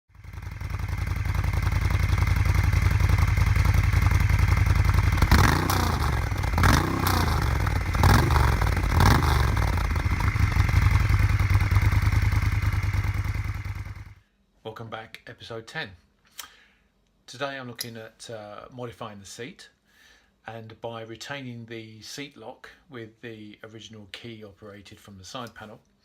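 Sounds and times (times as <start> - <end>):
motorcycle engine idling and revving: 0.1 - 14.2.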